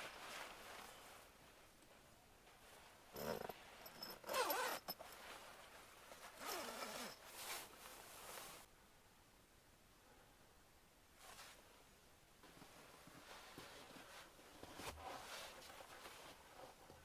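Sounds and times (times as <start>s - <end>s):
zipper being pulled: 3.2s - 5.0s, 6.4s - 8.6s.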